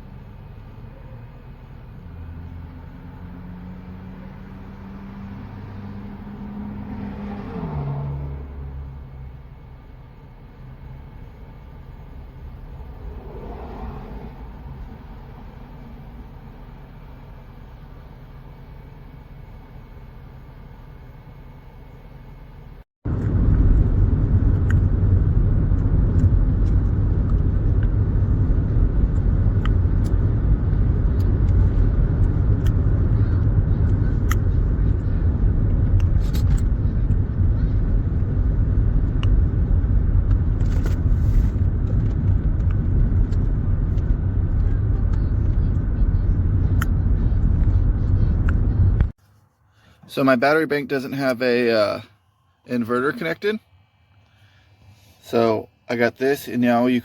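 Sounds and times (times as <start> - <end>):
car engine humming: 0.0 - 49.2
loud low rumble: 11.2 - 17.8, 23.0 - 49.2.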